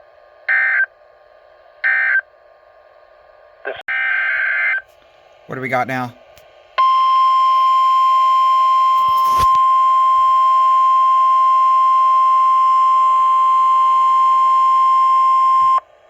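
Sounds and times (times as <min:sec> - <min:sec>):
steady high alarm tone: 0:06.8 - 0:15.8.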